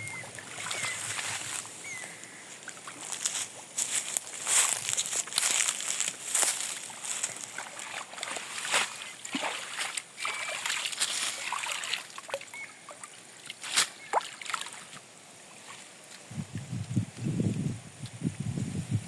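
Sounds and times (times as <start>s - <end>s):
water sloshing and splashing: 0.0s - 1.7s, 2.6s - 15.9s.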